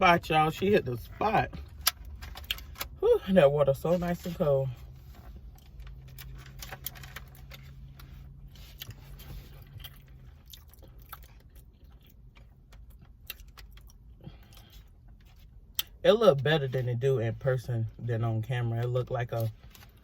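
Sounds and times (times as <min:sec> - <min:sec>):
low steady hum: 0:00.0 - 0:20.0
chewing with mouth clicks: 0:05.6 - 0:16.0.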